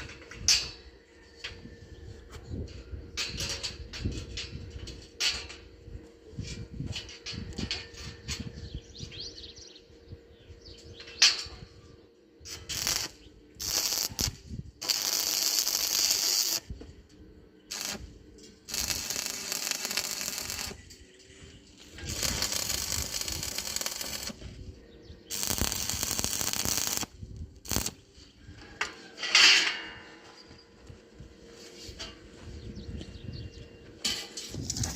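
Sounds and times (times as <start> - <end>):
harsh hissing bursts: 12.5 - 16.7, 17.7 - 20.9, 22.0 - 24.4, 25.3 - 28.0.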